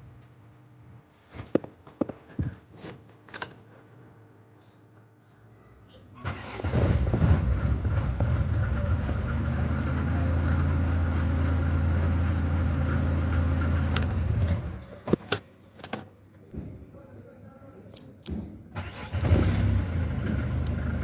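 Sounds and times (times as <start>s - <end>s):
car engine idling: 18.0s - 21.0s.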